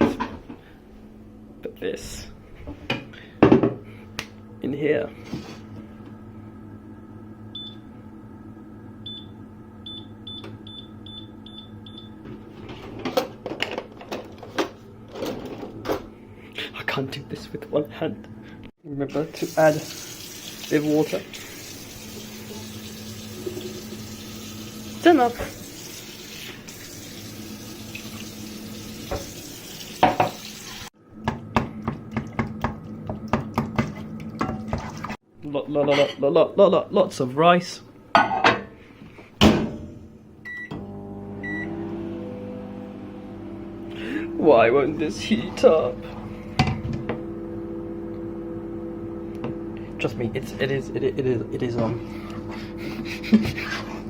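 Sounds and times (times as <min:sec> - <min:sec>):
electrical hum: 0:00.0 - 0:38.1, 0:38.8 - 0:54.0
microwave keypad beeps: 0:07.6 - 0:07.8, 0:09.0 - 0:12.2, 0:41.4 - 0:41.7.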